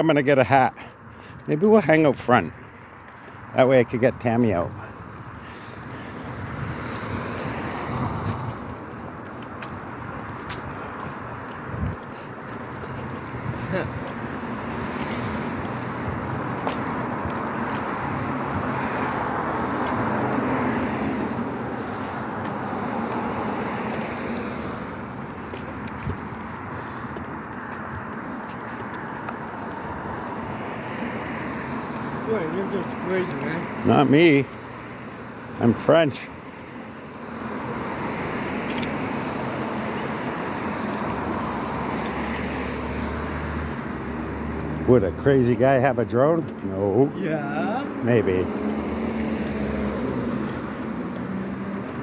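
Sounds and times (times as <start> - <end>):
car road and engine noise: 0.0 - 52.0.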